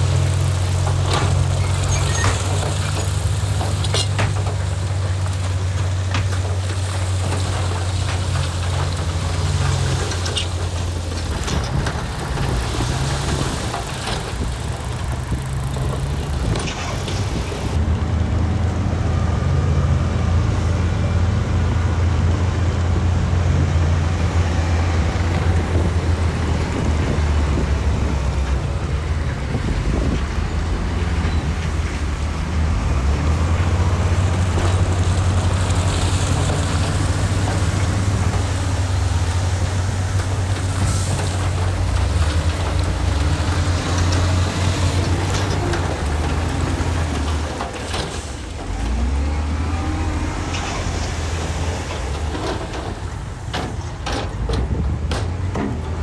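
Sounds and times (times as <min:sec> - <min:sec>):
heavy diesel engine running: 0:00.0 - 0:56.0
sharp clicks and knocks: 0:50.4 - 0:56.0.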